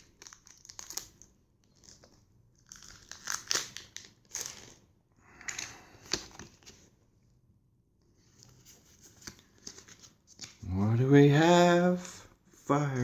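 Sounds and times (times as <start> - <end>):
foil wrapper tearing and crinkling: 0.0 - 4.8.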